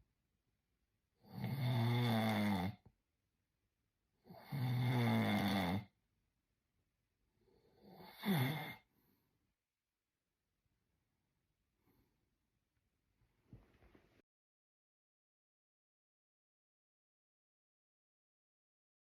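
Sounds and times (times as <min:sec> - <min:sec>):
person snoring: 0:01.2 - 0:02.8, 0:04.2 - 0:06.0, 0:07.5 - 0:08.9.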